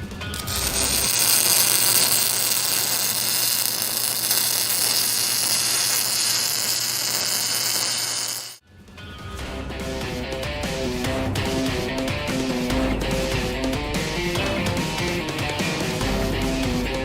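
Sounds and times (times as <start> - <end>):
welding arc hissing buzz: 0.4 - 8.6.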